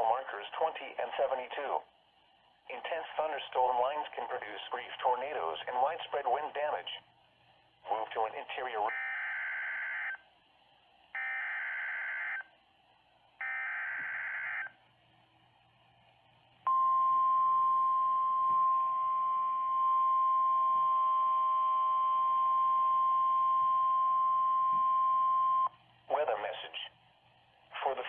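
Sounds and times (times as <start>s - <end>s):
steady warning alarm tone: 8.9s - 10.2s, 11.2s - 12.5s, 13.4s - 14.8s, 16.7s - 25.7s.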